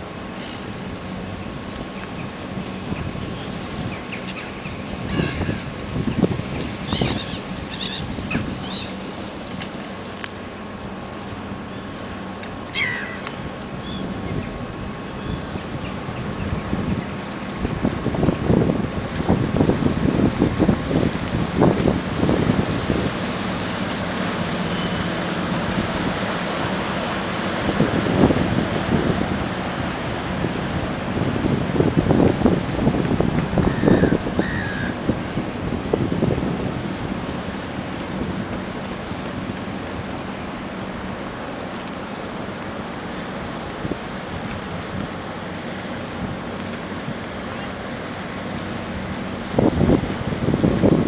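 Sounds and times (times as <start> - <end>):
boat engine running: 0.0 - 51.0
wind and water rushing: 0.0 - 51.0
bird calls: 2.0 - 9.0, 12.7 - 14.5, 15.1 - 17.0, 33.6 - 35.0.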